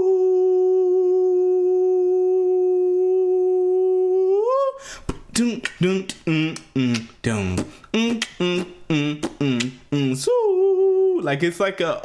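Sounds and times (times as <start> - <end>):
person humming: 0.0 - 11.4
person singing rhythmic syllables: 0.0 - 12.0
sharp vocal clicks: 5.0 - 10.2.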